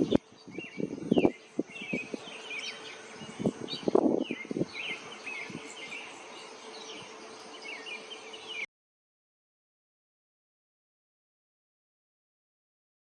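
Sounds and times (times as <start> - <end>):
hummingbird wing hum: 0.0 - 8.6
hummingbirds chittering chirps: 0.0 - 8.6.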